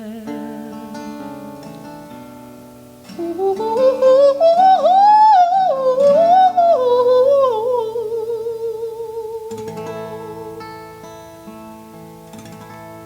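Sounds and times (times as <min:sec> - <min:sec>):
man singing with vibrato: 0:00.0 - 0:01.7, 0:03.1 - 0:10.8
acoustic guitar chords: 0:00.0 - 0:13.0.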